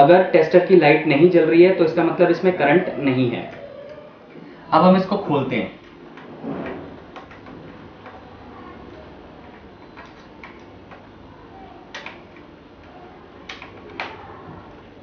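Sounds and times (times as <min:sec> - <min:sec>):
plastic and metal parts clicking: 0:11.9 - 0:14.2.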